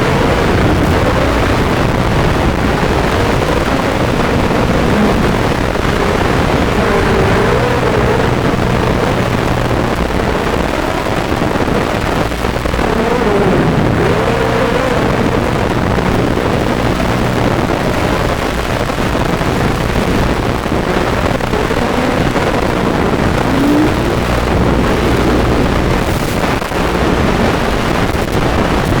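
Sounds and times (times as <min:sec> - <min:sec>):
quadcopter motors and propellers whining: 0:00.0 - 0:10.4, 0:20.2 - 0:27.5
rush of air noise: 0:00.0 - 0:29.0.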